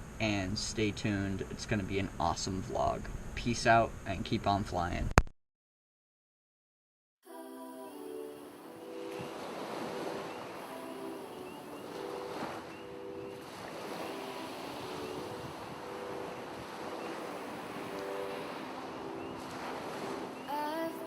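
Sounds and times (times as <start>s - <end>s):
sustained synth chords: 7.4s - 21.0s.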